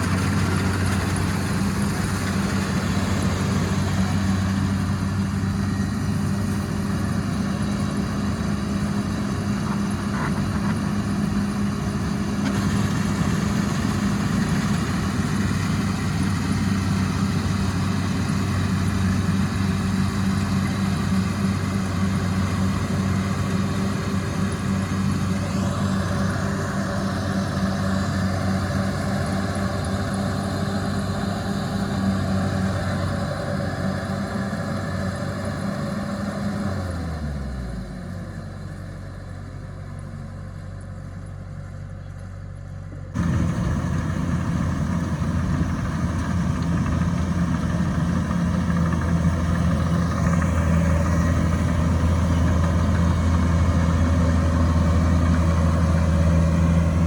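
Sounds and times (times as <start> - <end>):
combine harvester diesel engine: 0.0 - 57.0.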